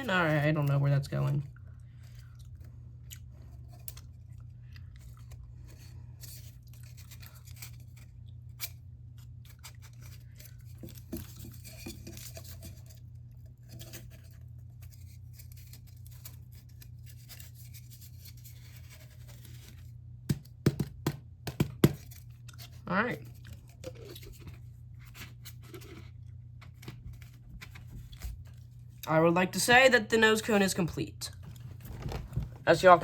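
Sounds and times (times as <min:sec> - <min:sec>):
small parts scraping and rustling: 0:03.2 - 0:20.0.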